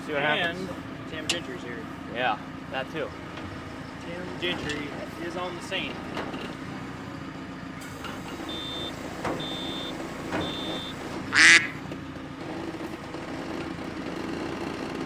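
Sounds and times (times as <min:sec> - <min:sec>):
diesel engine running: 0:00.0 - 0:15.0
warning alarm beeps: 0:08.3 - 0:11.6.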